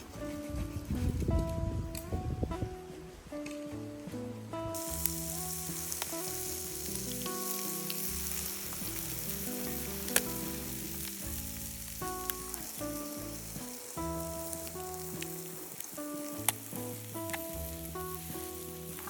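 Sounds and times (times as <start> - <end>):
background music: 0.0 - 19.0
food sizzling and crackling: 4.7 - 19.0.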